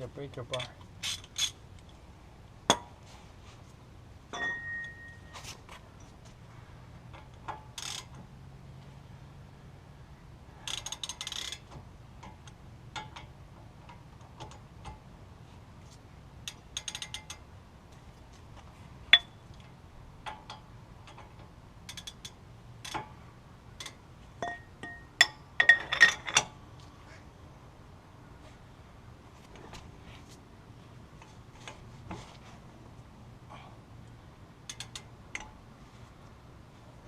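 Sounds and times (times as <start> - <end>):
metal tool clinks: 4.3 - 5.4
ratchet clicking: 10.7 - 11.6, 16.4 - 17.4, 21.8 - 23.0, 34.7 - 35.5.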